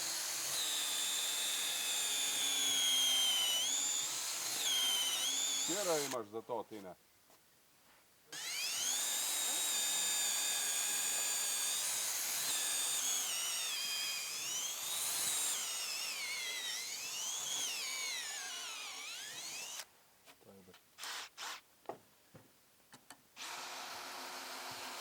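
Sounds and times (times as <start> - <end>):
cordless drill whining: 0.0 - 6.2, 8.4 - 19.9, 21.0 - 21.6, 23.4 - 25.0.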